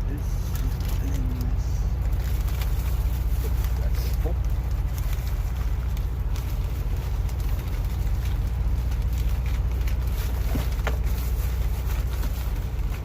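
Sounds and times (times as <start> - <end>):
engine idling: 0.0 - 13.0.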